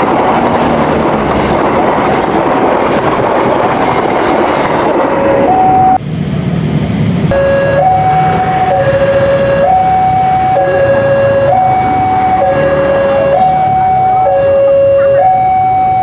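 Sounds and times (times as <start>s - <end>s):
two-tone crossing alarm: 5.1s - 6.0s, 7.3s - 16.0s.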